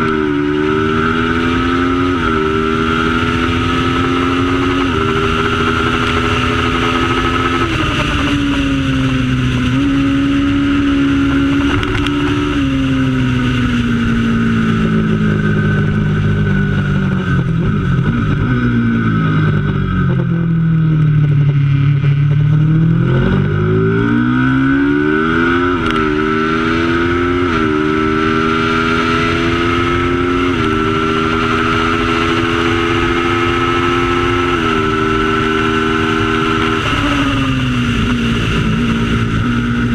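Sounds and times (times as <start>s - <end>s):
racing motorcycle engine: 0.0s - 39.9s.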